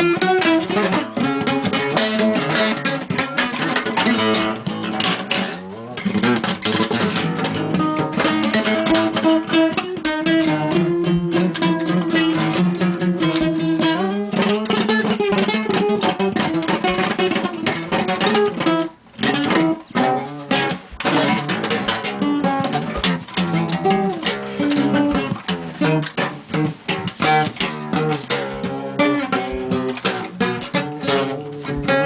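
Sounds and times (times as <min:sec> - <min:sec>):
nylon-string acoustic guitar playing: 0:00.0 - 0:32.0.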